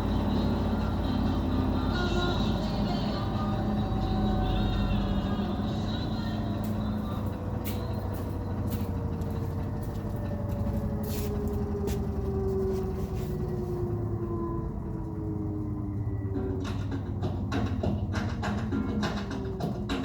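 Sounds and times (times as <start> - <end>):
washing machine motor hum: 0.0 - 19.9.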